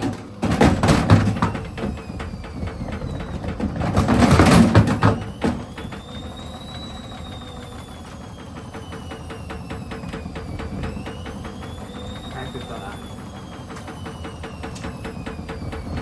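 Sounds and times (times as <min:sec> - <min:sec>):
washing machine motor whine: 0:00.0 - 0:16.0
washing machine thumping and clattering: 0:00.0 - 0:16.0
rapid regular ticking: 0:05.2 - 0:16.0.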